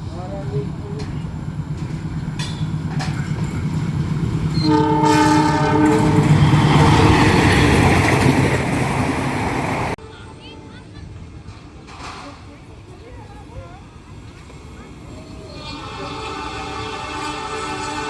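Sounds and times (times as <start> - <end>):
train rumbling: 0.0 - 18.0
locomotive horn blast: 4.5 - 8.1, 15.6 - 18.0.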